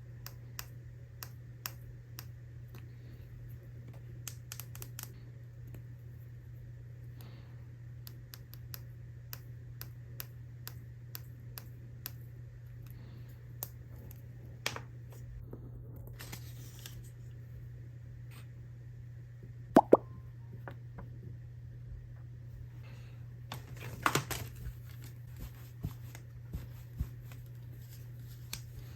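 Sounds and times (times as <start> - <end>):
low hum: 15.2 - 23.5
plastic lid popping: 19.8 - 20.1
packaging crinkle: 23.5 - 25.2.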